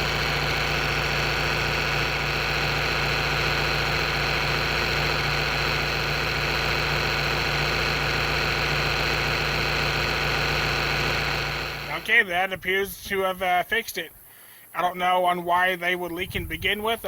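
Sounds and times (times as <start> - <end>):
loader engine idling: 0.0 - 12.6.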